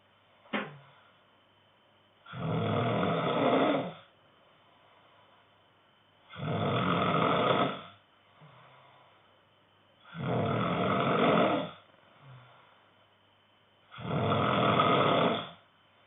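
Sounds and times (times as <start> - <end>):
man snoring: 2.3 - 4.1, 6.3 - 8.8, 10.0 - 12.5, 13.9 - 15.6.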